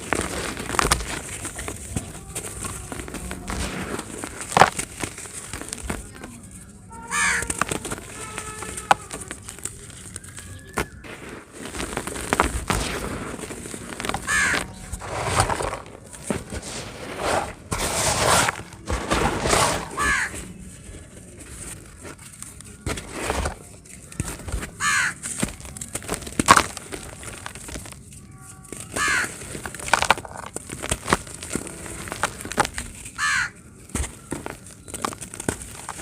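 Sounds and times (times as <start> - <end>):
dry cement crumbling: 0.0 - 36.0
sharp crack: 11.1 - 16.0.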